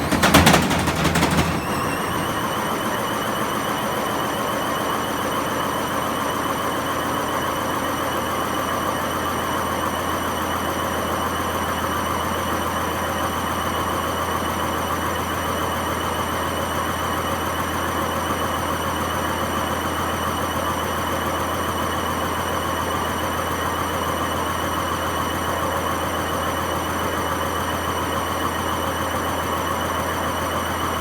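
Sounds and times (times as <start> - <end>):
loud bearing rumble with whine: 0.0 - 4.3
washing machine spinning: 0.0 - 4.6.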